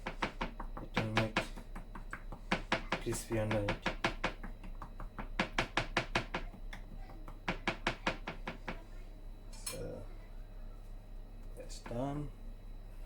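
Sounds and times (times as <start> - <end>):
toothpick tapping a board: 0.0 - 8.8.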